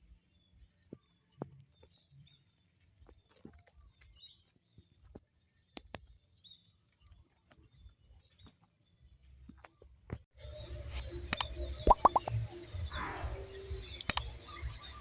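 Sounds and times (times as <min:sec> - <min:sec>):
faint high chirps: 0:10.4 - 0:15.0
faint clicks: 0:10.6 - 0:15.0.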